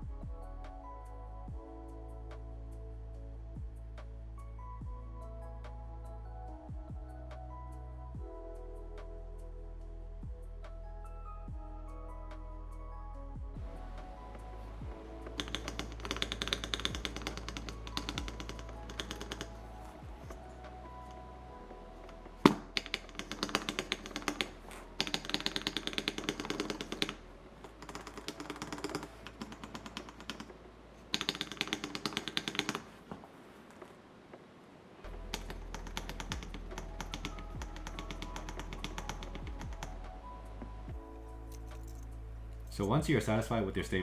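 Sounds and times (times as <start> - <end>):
background music: 0.0 - 32.8, 35.0 - 44.0
keyboard keys clacking: 13.6 - 33.1, 35.1 - 44.0.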